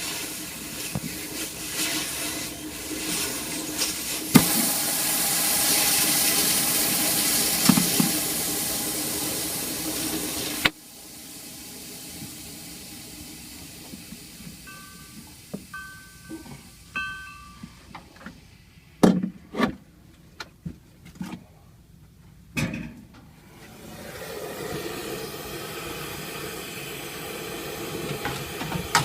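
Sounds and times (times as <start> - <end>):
loud rushing hiss of gas: 0.0 - 17.4, 23.5 - 29.0.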